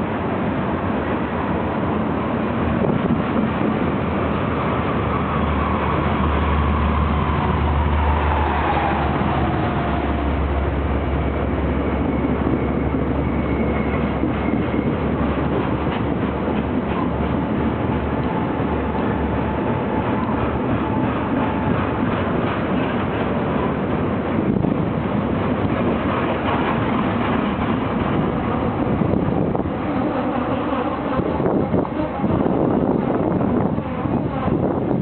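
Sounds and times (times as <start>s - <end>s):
freight train rumbling past: 0.0s - 35.0s
wheels clicking over rail joints: 19.6s - 30.4s.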